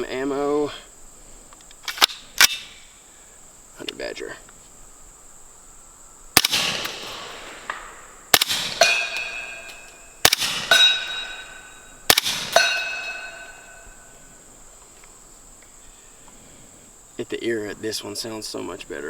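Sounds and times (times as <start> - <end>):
steel target ringing: 6.4 - 14.1
suppressed gunshots: 6.4 - 14.1.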